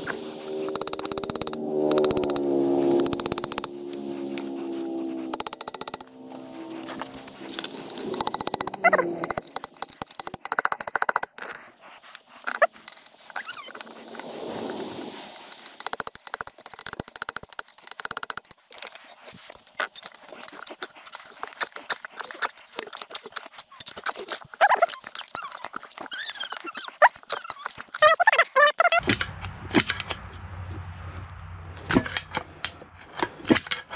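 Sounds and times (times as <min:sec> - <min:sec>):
hand tools clicking and rattling: 0:00.0 - 0:13.7, 0:15.8 - 0:30.2
short squeaks: 0:23.7 - 0:29.0.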